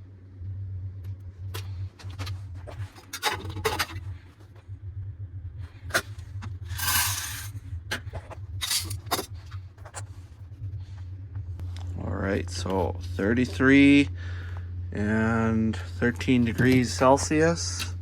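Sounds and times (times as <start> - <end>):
low steady hum: 0.0 - 18.0
dry beans rattling and scraping: 1.5 - 4.5, 5.7 - 10.3, 16.0 - 18.0.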